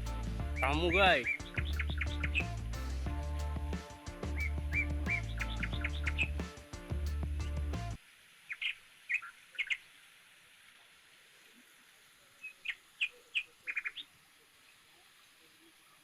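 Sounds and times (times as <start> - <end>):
faint steady hiss: 0.0 - 16.0
small bird chirping: 4.4 - 6.4.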